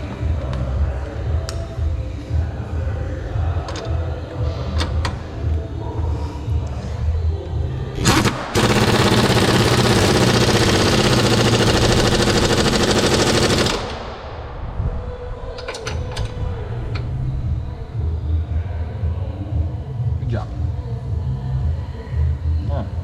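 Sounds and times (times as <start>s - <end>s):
impact wrench hammering: 8.0s - 14.0s.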